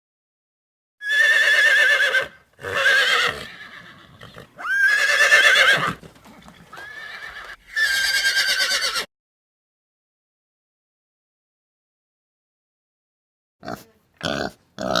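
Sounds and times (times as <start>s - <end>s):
horse whinnying: 1.0s - 9.1s.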